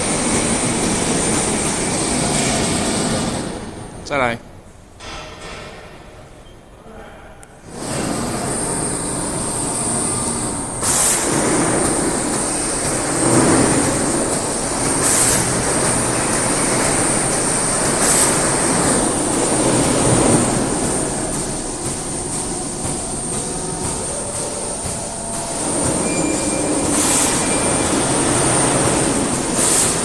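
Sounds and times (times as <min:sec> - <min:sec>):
short hissing bursts: 0:07.6 - 0:30.0
polishing machine whining: 0:07.7 - 0:30.0.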